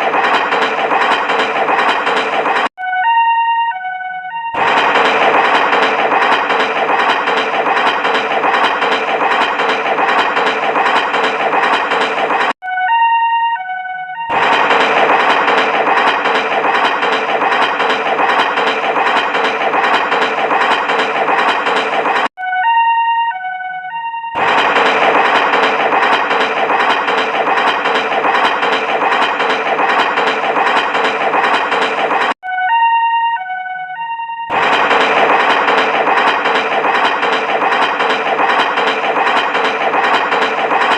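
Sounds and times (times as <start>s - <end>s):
electronic siren wailing: 2.8s - 6.9s, 12.6s - 16.3s, 22.4s - 26.8s, 32.4s - 37.8s.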